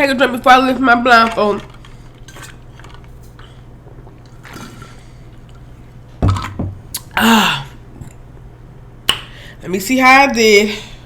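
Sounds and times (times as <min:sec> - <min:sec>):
person sipping: 0:01.7 - 0:08.2
person gulping: 0:02.8 - 0:08.2
person exhaling ahh: 0:07.0 - 0:07.8.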